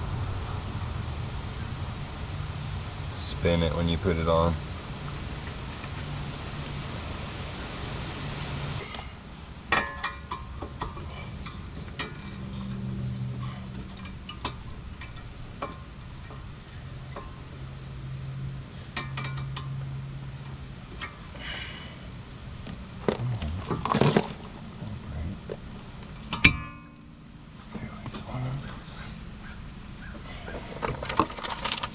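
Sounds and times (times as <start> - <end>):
metallic clinks of brake parts: 9.7 - 17.6, 18.9 - 19.9.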